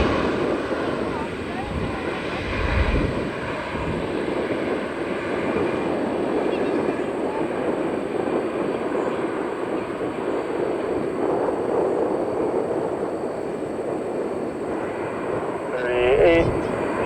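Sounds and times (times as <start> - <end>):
jet engines roaring at takeoff: 0.0 - 17.0.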